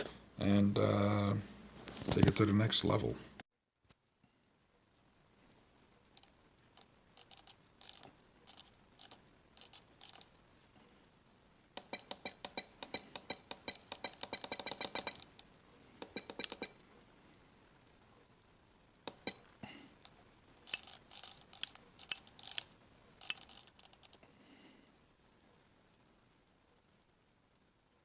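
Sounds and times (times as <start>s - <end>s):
metal tools clicking: 6.2s - 10.3s, 11.8s - 15.4s, 16.0s - 16.7s, 20.7s - 24.2s
rapid ringing metallic clicks: 11.8s - 15.3s.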